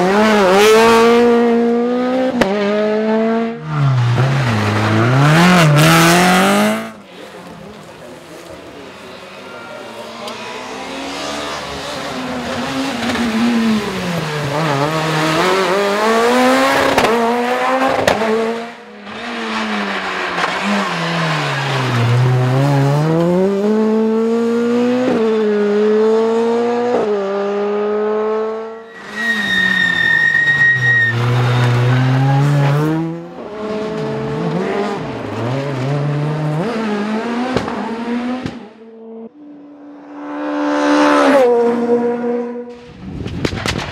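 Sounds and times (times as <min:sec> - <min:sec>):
rally car engines revving: 0:00.0 - 0:43.9
steady high whistle: 0:28.9 - 0:31.2.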